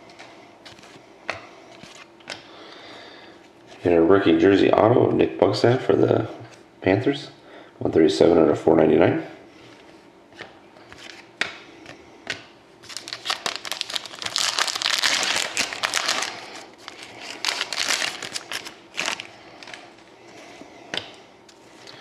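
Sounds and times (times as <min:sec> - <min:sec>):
wrapper crinkling: 0:12.8 - 0:20.0.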